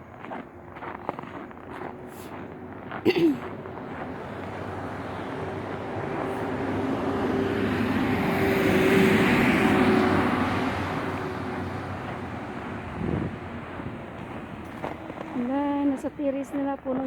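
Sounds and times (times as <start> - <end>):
vehicle passing by: 3.6 - 15.5.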